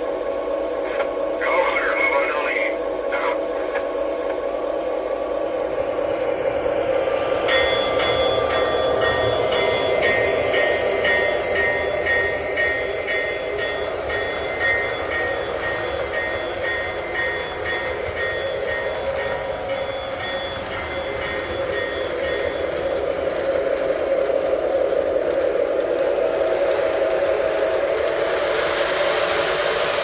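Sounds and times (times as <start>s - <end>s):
locomotive bell ringing: 5.7s - 24.0s.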